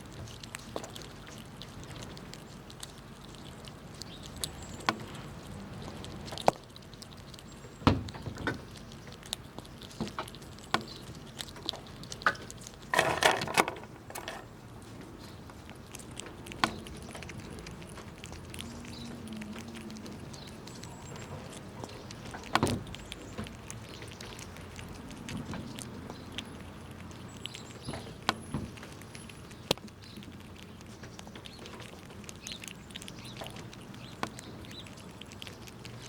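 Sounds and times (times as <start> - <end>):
low background hum: 0.0 - 36.0
squirrels cracking nuts: 0.0 - 36.0.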